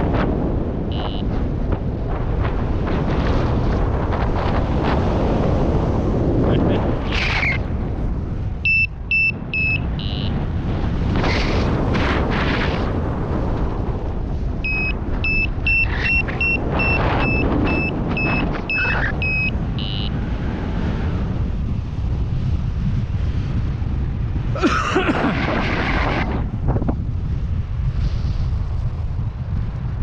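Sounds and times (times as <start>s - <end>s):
wind noise on microphone: 0.0s - 30.0s
variometer beeping: 0.9s - 1.3s, 8.6s - 10.4s, 14.6s - 20.2s.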